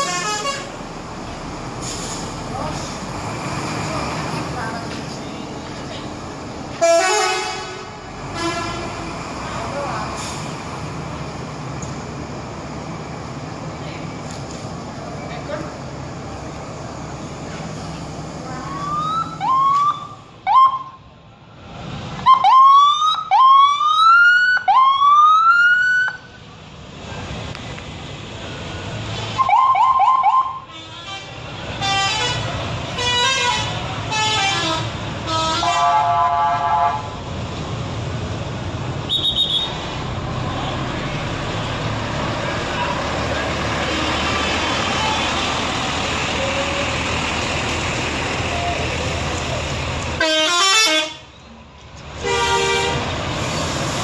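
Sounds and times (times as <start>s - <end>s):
bus musical horns: 0.0s - 0.8s, 6.8s - 9.0s, 30.5s - 37.2s, 50.2s - 51.3s, 52.2s - 53.1s.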